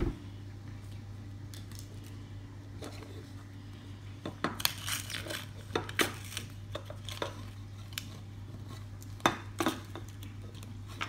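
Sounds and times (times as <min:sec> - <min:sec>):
steady low hum: 0:00.0 - 0:11.0
plastic packaging crinkling: 0:04.6 - 0:09.2.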